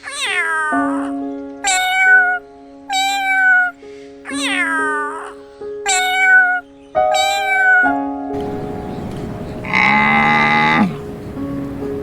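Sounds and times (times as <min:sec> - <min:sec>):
cat meowing: 0:00.0 - 0:08.7, 0:09.5 - 0:11.0
low animal call: 0:00.0 - 0:11.8
background music: 0:00.0 - 0:12.0.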